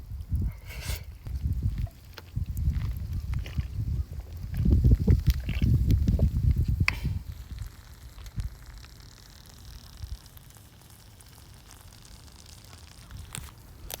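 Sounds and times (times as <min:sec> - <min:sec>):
campfire crackling: 0:00.0 - 0:14.0.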